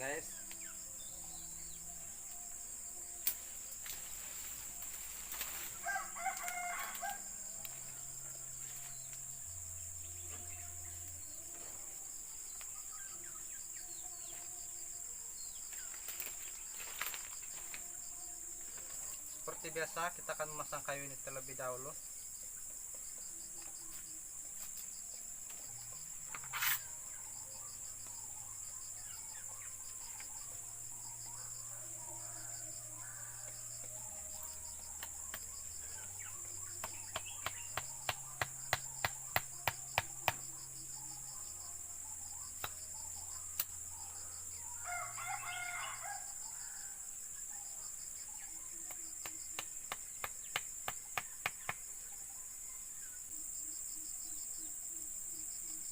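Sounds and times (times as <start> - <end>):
crickets droning: 0.0 - 55.9
rooster crowing: 5.7 - 8.5, 44.8 - 47.0.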